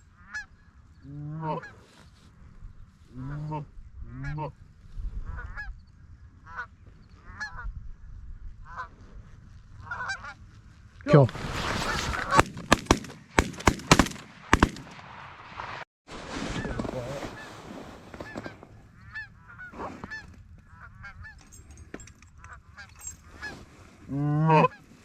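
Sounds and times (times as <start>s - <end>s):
geese honking: 0.2s - 0.6s, 9.8s - 10.4s, 18.2s - 21.4s
shotgun blasts: 11.2s - 15.8s.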